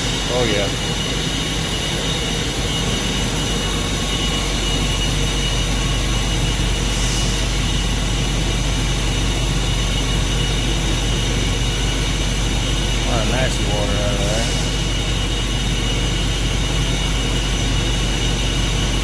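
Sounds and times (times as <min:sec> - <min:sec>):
steam rushing out roar: 0:06.7 - 0:08.0
sharp steam hiss: 0:06.8 - 0:07.7.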